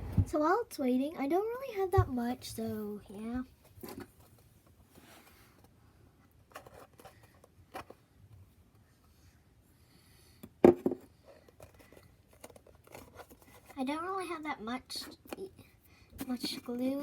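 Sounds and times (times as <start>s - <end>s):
handling scrapes and clicks: 6.4s - 8.0s, 11.3s - 13.8s.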